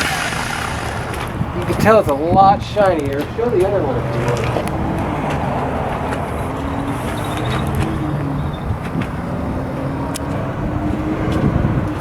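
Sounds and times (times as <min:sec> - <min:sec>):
motor humming: 0:00.0 - 0:02.0.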